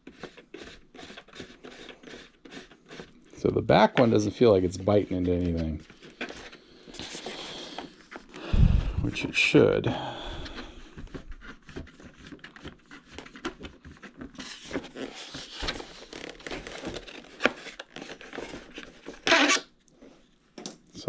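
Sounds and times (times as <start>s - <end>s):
screw clicking and scraping in plastic: 0.0s - 3.4s.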